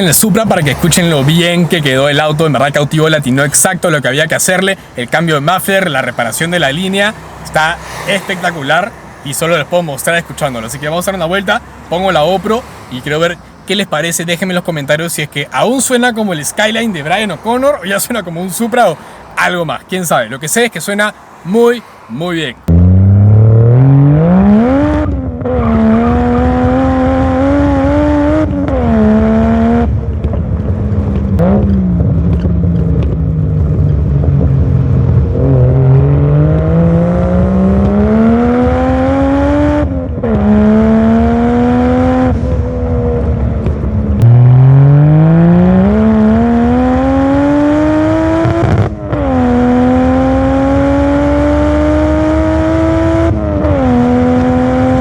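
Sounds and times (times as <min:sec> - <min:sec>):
car engine accelerating through gears: 0:22.6 - 0:55.0.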